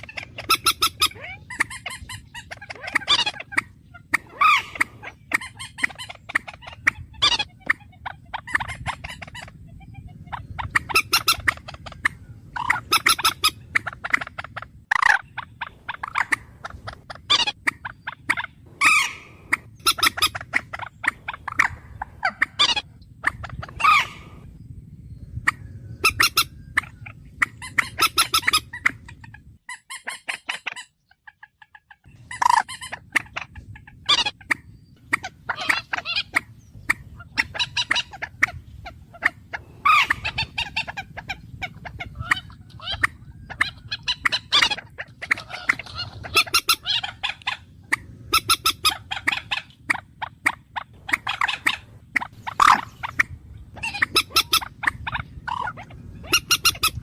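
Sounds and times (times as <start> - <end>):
background hum: 0.0 - 57.0
bird calling in pulsed bursts: 0.0 - 57.0.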